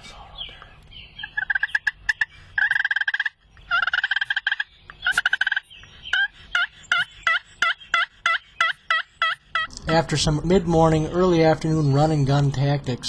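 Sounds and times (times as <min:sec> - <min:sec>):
turkey yelping: 0:01.2 - 0:10.0
turkey gobbling: 0:01.2 - 0:10.1.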